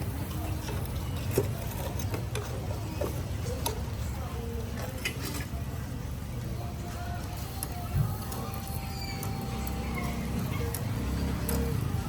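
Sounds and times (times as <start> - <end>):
faint background voices: 0.0 - 12.0.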